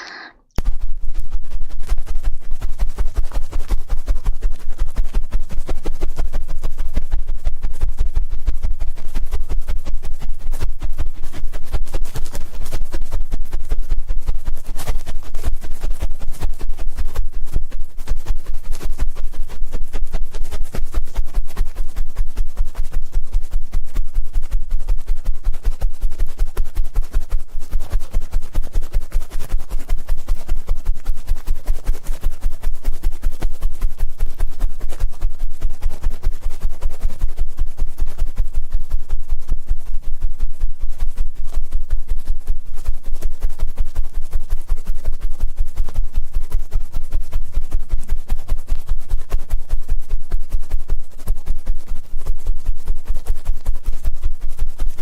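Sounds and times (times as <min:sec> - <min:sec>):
ear pick scratching: 0:00.0 - 0:16.4.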